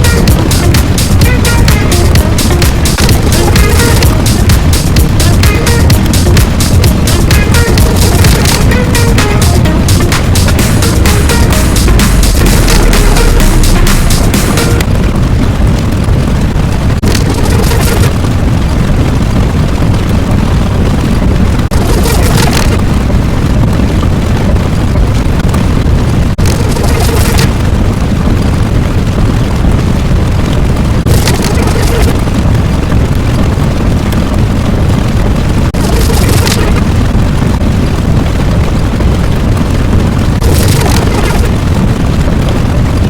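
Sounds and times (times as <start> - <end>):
low rumbling: 0.0 - 43.0.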